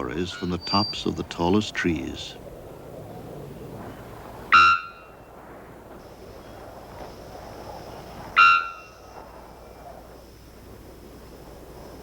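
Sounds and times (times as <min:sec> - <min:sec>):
bellbird call: 0:00.0 - 0:01.2
soft forest hiss: 0:00.0 - 0:12.0.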